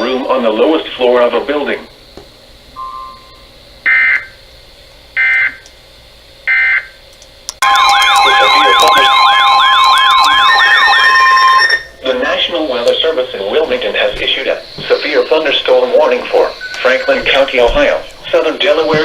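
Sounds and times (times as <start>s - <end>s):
high alarm tone: 2.8s - 4.4s, 5.2s - 5.6s, 6.5s - 7.0s, 7.6s - 13.6s, 14.3s - 19.0s
warbling siren tone: 7.6s - 12.0s
buzzy data bursts: 7.6s - 19.0s.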